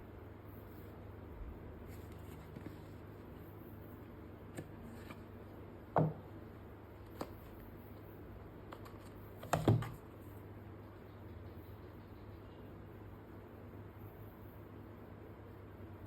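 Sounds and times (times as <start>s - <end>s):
dull knocks of box set down: 6.0s - 6.2s.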